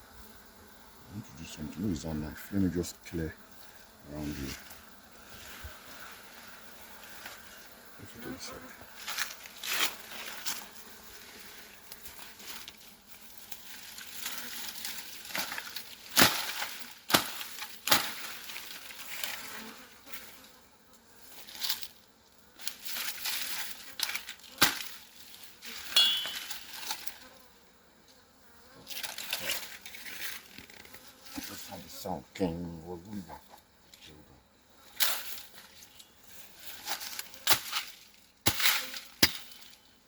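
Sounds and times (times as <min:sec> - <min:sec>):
honeybees buzzing: 0:00.0 - 0:33.9
knife scraping and rustling: 0:25.6 - 0:27.3.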